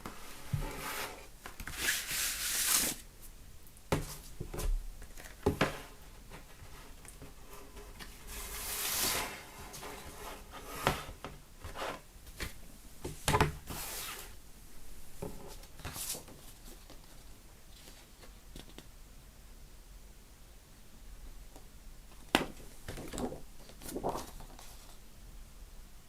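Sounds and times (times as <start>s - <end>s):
cardboard and paper sleeves rubbing: 0.1s - 3.0s, 8.3s - 11.1s.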